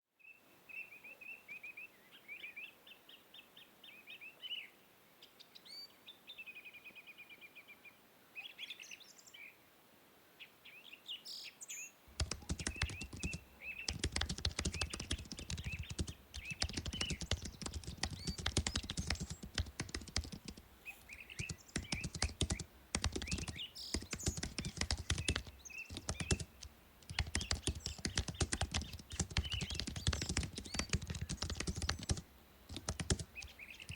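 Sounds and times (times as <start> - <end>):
small birds chirping: 10.4 - 33.9
fast typing on keyboard: 12.2 - 20.6, 21.4 - 33.9.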